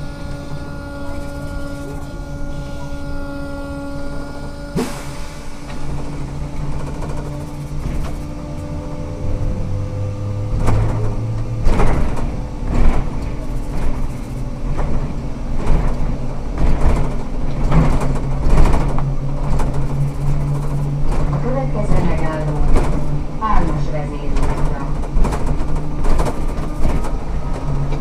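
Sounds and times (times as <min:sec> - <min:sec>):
trolleybus electric drive hum: 0:00.0 - 0:28.0
knocks and rattles: 0:05.9 - 0:08.4, 0:10.5 - 0:28.0.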